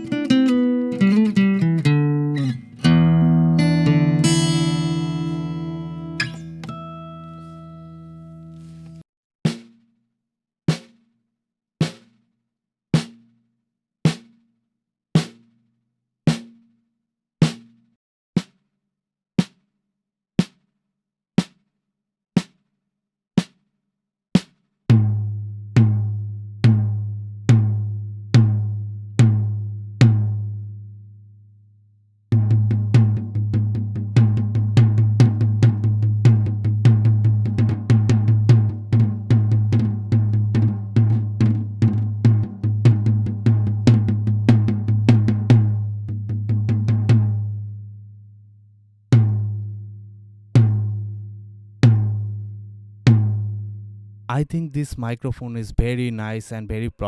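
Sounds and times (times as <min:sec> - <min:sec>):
snare drum strokes: 0:08.6 - 0:09.8
fast drum roll: 0:32.4 - 0:47.4.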